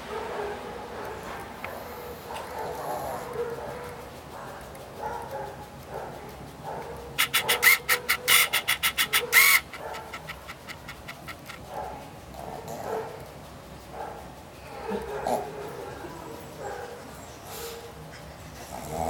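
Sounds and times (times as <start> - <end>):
dog snoring softly: 1.2 - 3.6, 18.6 - 19.0
rapid sharp clicking pulses: 1.7 - 14.6.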